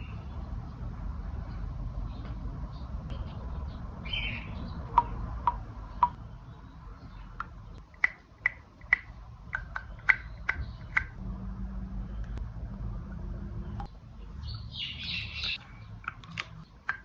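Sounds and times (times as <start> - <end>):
toy pressed giving crisp pops: 7.4 - 11.2.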